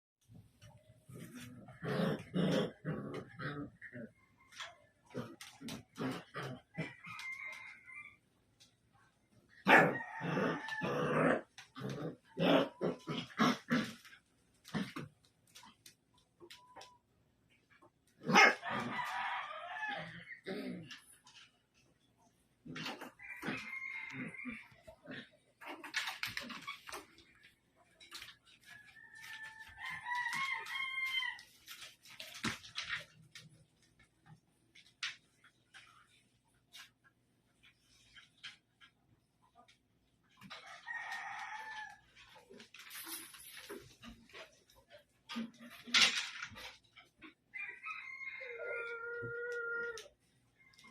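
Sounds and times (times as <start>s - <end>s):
puppy barking and yelping: 9.6s - 14.1s, 18.2s - 19.4s
rooster crowing: 18.6s - 20.2s, 23.2s - 24.8s, 28.9s - 31.5s, 47.6s - 50.1s
puppy howling: 48.5s - 50.1s.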